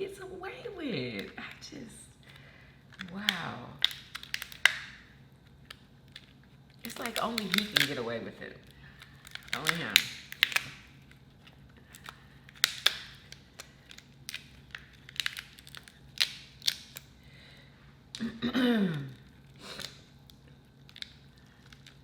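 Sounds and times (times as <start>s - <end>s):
shells cracking and snapping: 1.1s - 18.3s, 18.9s - 22.0s
wet tearing: 6.8s - 8.0s, 8.8s - 11.1s, 11.8s - 17.1s.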